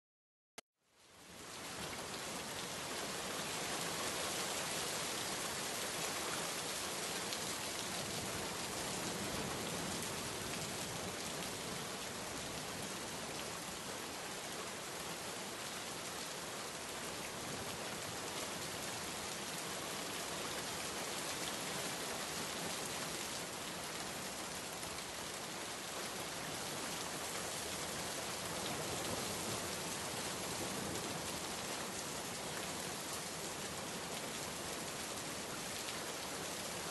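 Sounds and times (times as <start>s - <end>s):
steady rainfall: 0.9s - 36.9s.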